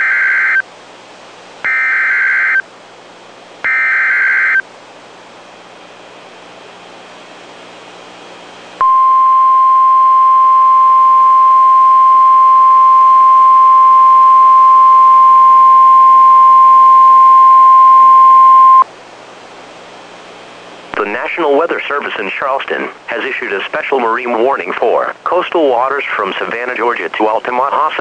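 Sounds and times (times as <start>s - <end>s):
weather radio alarm tone: 0.0s - 0.6s, 1.7s - 2.6s, 3.6s - 4.6s, 8.8s - 18.8s
faint radio hiss: 19.4s - 28.0s.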